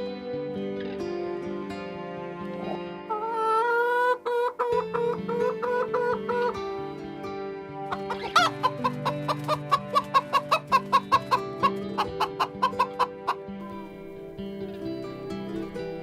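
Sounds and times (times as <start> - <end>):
plucked acoustic guitar music: 0.0 - 3.2, 4.0 - 16.0
chicken clucking: 2.5 - 6.9, 7.9 - 14.2.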